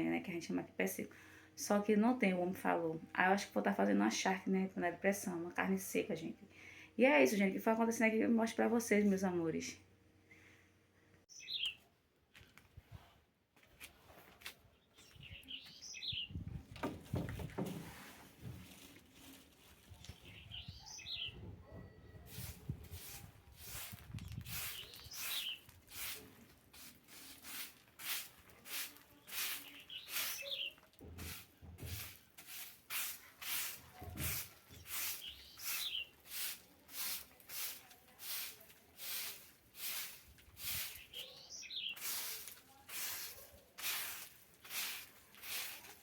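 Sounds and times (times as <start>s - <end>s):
broom sweeping a floor: 17.5s - 20.0s, 22.3s - 46.0s.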